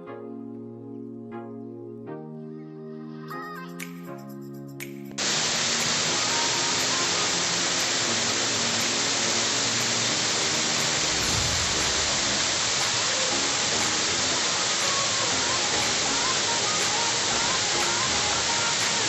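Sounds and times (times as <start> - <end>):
music: 0.0 - 19.0
waterfall rushing: 5.2 - 19.0.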